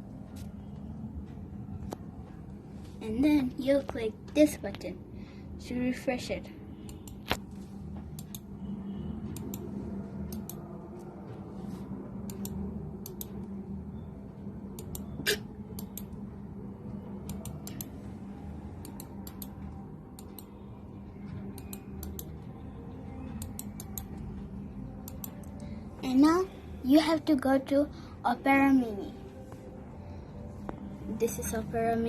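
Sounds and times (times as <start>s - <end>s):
steady low hum: 0.0s - 32.0s
laptop keys clicking: 10.3s - 10.7s, 18.8s - 19.6s, 21.5s - 22.4s.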